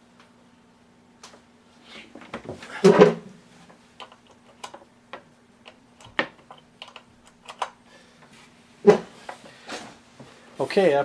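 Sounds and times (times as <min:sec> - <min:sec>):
faint steady hum: 0:00.0 - 0:11.0
objects being handled clicking: 0:04.0 - 0:07.8.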